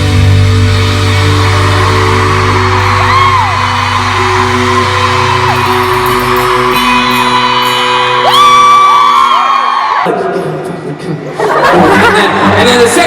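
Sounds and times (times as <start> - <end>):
rock band playing chords: 0.0 - 10.1
fans screaming and whooping: 0.1 - 10.1.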